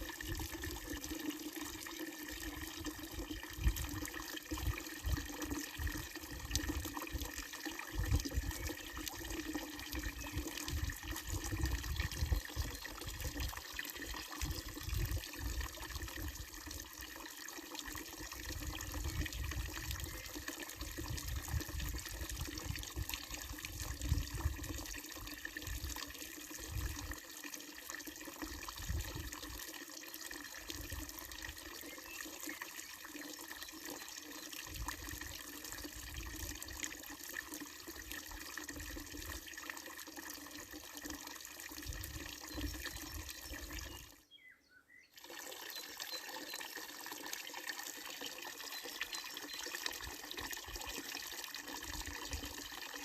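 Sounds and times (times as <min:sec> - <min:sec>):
fountain water splashing into trough: 0:00.0 - 0:44.2, 0:45.2 - 0:53.0.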